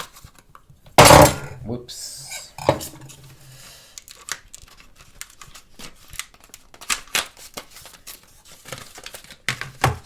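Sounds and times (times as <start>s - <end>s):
plastic packaging crinkling: 4.0s - 10.0s.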